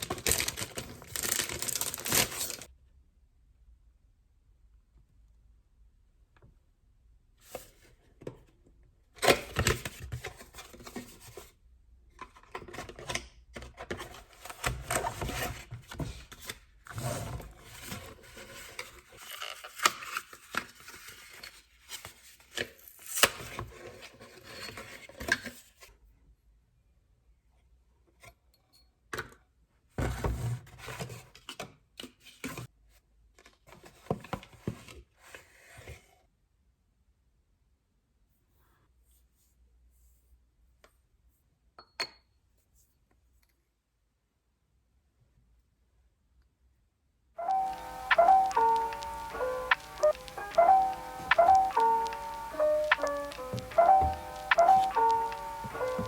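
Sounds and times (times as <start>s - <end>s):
packaging scraping and rustling: 0.0s - 2.7s
small knocks and clicks: 47.5s - 56.0s.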